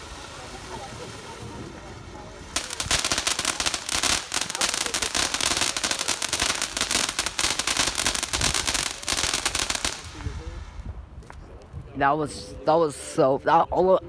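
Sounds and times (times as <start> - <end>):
firework crackling: 0.0 - 10.9.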